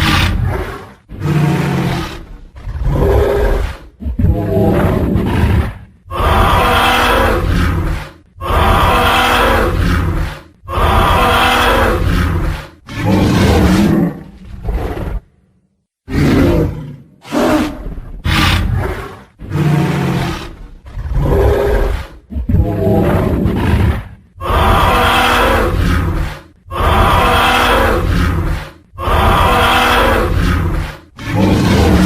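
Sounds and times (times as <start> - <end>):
dinosaur roars: 0.0 - 15.3, 16.1 - 32.0.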